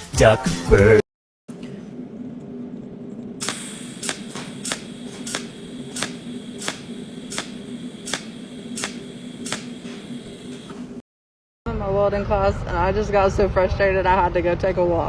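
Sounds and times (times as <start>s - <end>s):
steady low hum: 1.5s - 11.0s
sharp clicks: 3.4s - 10.9s.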